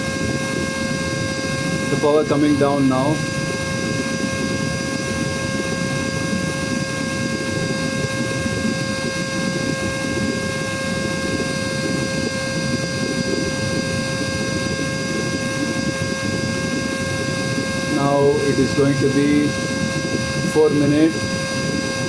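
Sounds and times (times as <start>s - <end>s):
vacuum cleaner motor whining: 0.0s - 22.0s.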